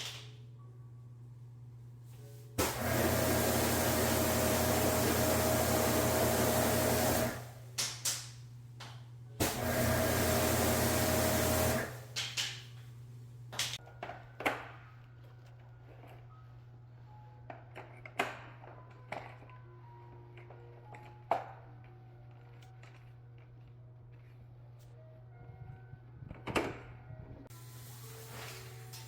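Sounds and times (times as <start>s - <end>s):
pressure washer spraying: 2.6s - 7.5s, 9.4s - 12.0s
pump whine: 2.6s - 7.6s, 9.4s - 12.0s.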